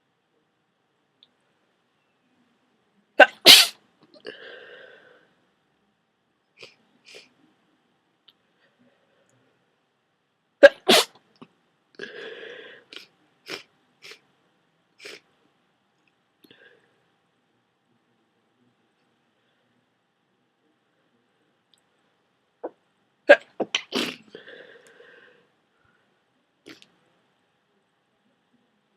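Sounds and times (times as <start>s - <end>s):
person sneezing: 3.2s - 4.4s, 10.6s - 11.1s, 23.3s - 24.4s.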